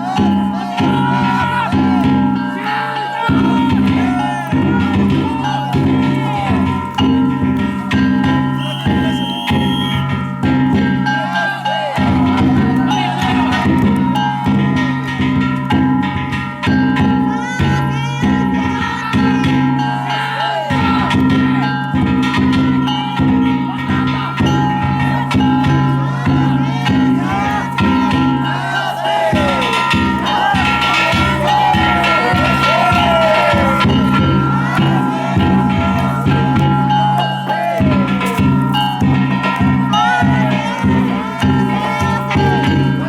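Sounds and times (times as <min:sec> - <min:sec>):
ringing metal gongs: 0:00.0 - 0:43.0
taiko drum beating: 0:00.0 - 0:43.0
voices calling out: 0:00.0 - 0:43.0
high-pitched call: 0:08.4 - 0:10.2.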